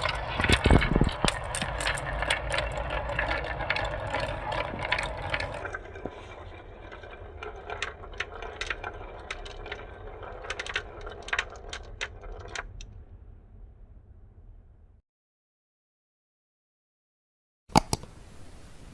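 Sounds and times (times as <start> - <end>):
marbles clacking: 0.0 - 13.0
marbles rolling on track: 0.0 - 13.0
faint hiss: 18.0 - 18.9.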